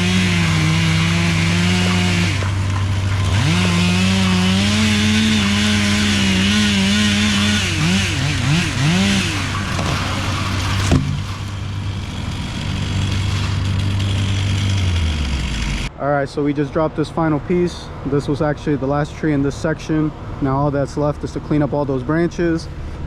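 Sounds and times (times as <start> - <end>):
chainsaw cutting and revving: 0.0 - 15.9.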